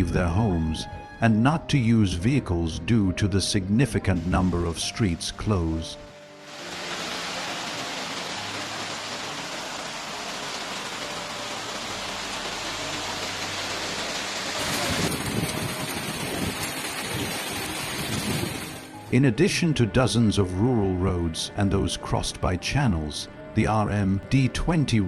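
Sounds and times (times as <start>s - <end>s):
heavy rain pouring: 3.9s - 19.2s.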